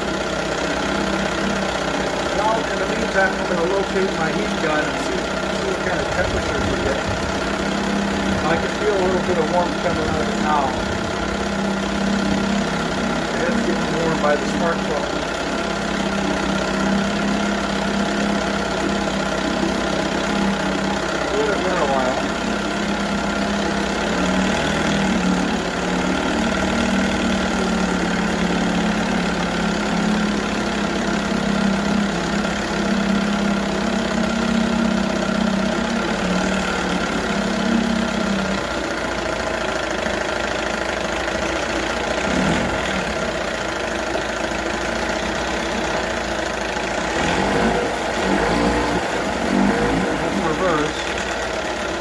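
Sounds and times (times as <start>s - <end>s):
outboard motor idling: 0.0s - 52.0s.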